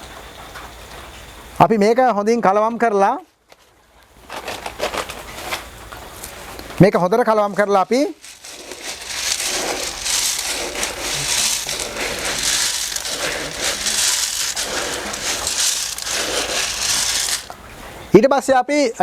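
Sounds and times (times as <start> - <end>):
dry feed being stirred: 7.8 - 17.5.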